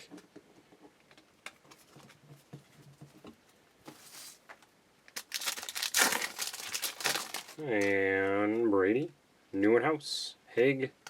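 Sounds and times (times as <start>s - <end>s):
wrapper crinkling and tearing: 5.1s - 7.9s.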